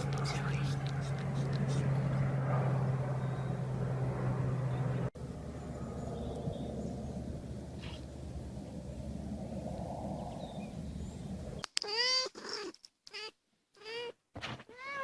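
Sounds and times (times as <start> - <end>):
steady low noise: 0.0 - 11.6
cat meowing: 11.8 - 14.1, 14.7 - 15.0.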